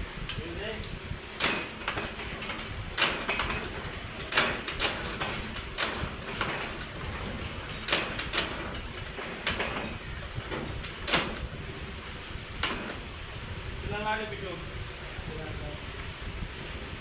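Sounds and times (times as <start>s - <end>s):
hand tools clicking and scraping: 1.4s - 11.5s.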